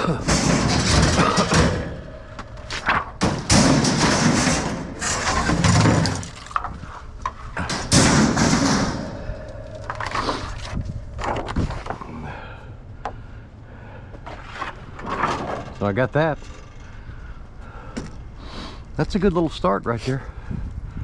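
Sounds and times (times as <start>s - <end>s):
thumps and knocks: 0.0s - 12.1s
scraping and rustling: 0.0s - 12.2s.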